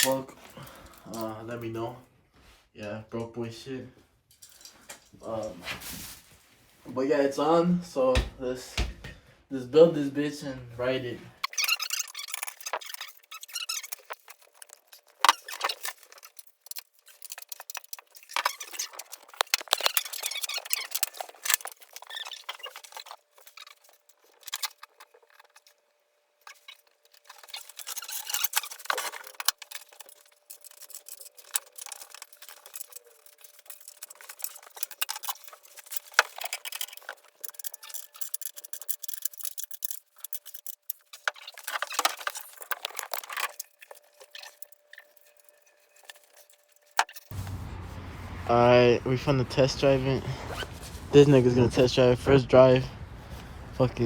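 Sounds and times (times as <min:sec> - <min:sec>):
metal tools clinking and rattling: 0:26.5 - 0:47.3.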